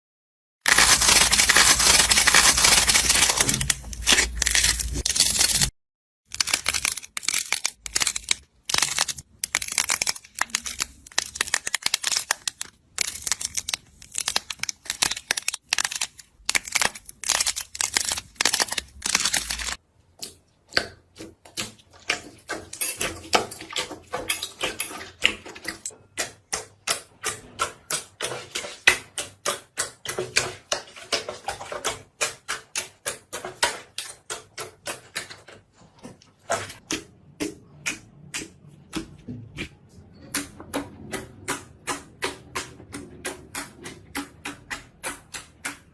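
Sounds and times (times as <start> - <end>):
slime crackling and popping: 6.3 - 19.8.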